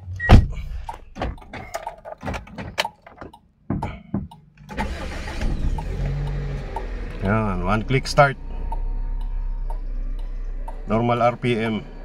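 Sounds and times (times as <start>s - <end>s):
clicks and knocks: 0.8s - 4.7s
car engine starting and idling: 4.3s - 12.0s.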